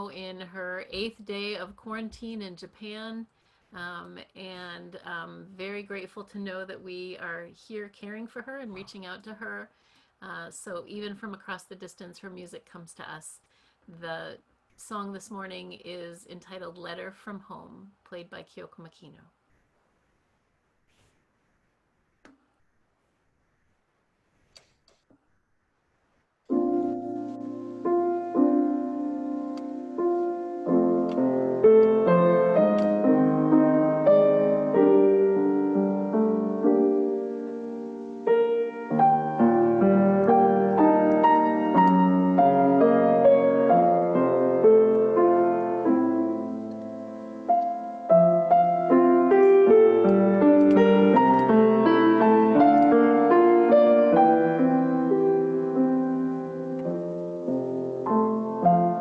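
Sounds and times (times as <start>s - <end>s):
solo piano: 26.5s - 59.0s.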